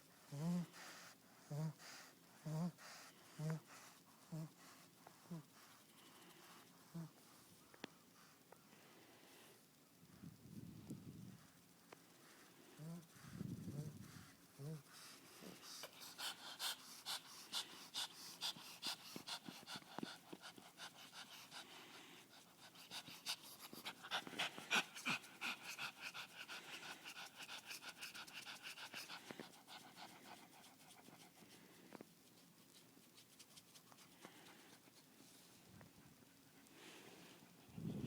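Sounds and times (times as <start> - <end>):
dog breathing noisily: 12.1 - 31.6.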